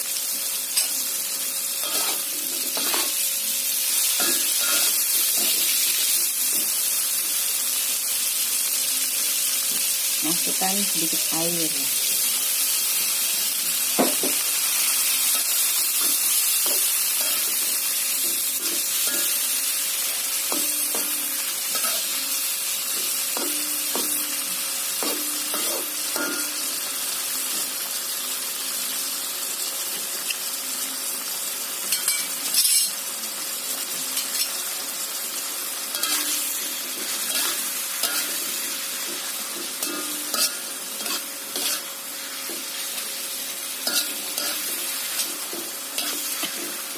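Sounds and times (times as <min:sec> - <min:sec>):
food sizzling in a pan: 0:00.0 - 0:46.9
spatula scraping and knocking pan: 0:37.0 - 0:42.7.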